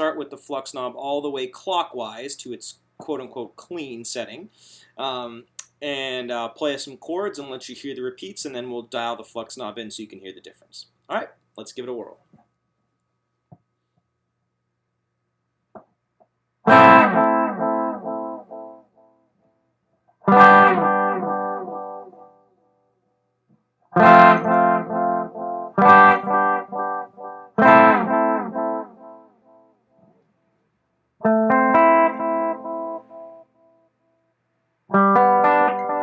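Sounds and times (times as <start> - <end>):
electric guitar strumming chords: 16.6 - 19.1, 20.2 - 22.5, 23.9 - 29.7, 31.2 - 33.5, 34.9 - 36.0.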